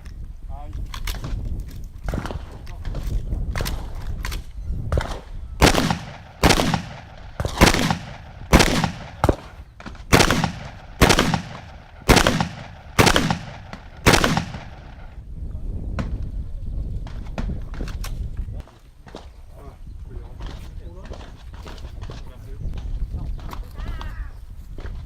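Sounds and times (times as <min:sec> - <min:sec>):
shotgun shots with echo: 0:04.9 - 0:15.2.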